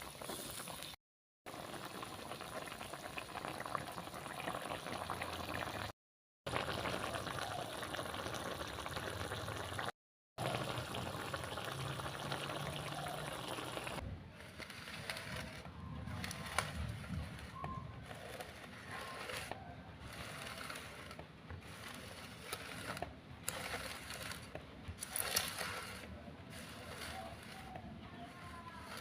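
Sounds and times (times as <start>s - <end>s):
food sizzling in a pan: 0.0s - 5.8s, 6.5s - 14.0s.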